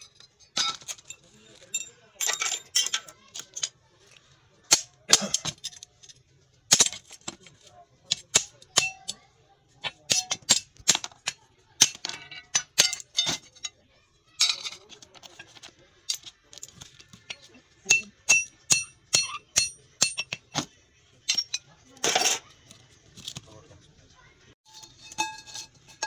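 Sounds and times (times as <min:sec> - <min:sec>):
metal tools clinking and knocking: 0:00.0 - 0:09.2, 0:09.8 - 0:23.6, 0:24.7 - 0:26.0
metal scraping: 0:24.6 - 0:26.0.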